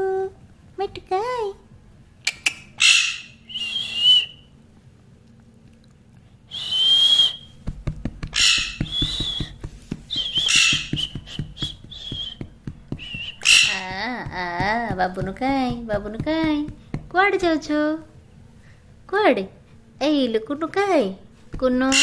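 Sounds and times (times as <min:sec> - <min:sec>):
parrot squawking: 0:02.3 - 0:03.6, 0:08.3 - 0:09.1, 0:10.2 - 0:11.2, 0:13.3 - 0:14.0
fast faint ticking: 0:07.6 - 0:17.7.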